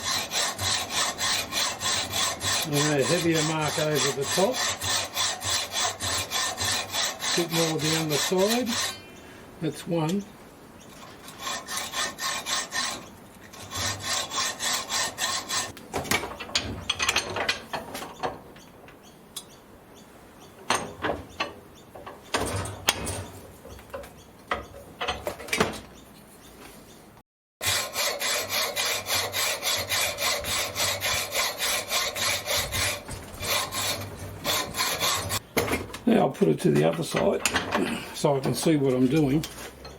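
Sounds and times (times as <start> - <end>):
hand saw scraping through metal: 0.0 - 9.1, 11.0 - 15.8, 27.6 - 35.4.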